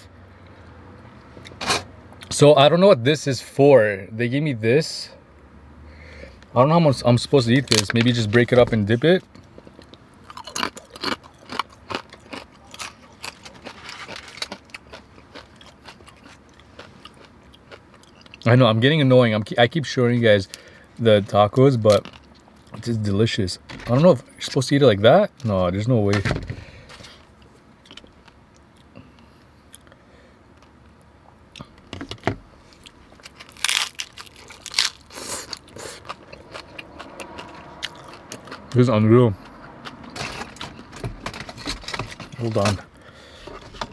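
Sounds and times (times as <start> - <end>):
crisp chewing crunches: 9.3 - 18.5, 21.8 - 22.9, 32.7 - 38.8.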